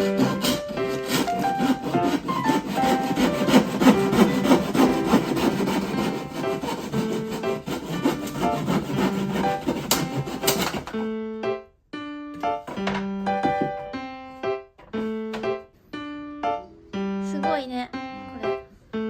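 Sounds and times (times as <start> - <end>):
wood being sawn: 0.0 - 11.0
piano music: 0.0 - 19.0.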